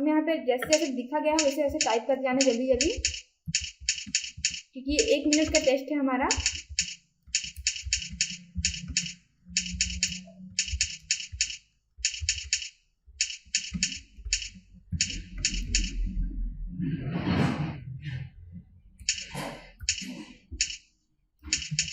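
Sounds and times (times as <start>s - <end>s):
keyboard keystrokes clicking: 0.6s - 5.7s, 6.3s - 16.0s, 19.0s - 20.8s, 21.4s - 21.9s.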